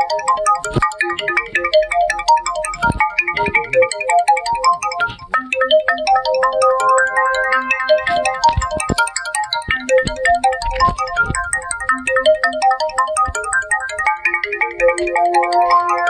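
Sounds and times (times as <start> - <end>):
electronic phone ringtone: 5.8 - 16.0.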